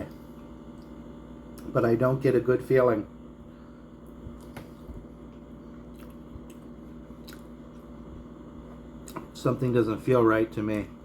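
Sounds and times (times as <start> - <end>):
low electrical hum: 0.0 - 11.0
wet chewing: 5.8 - 8.0.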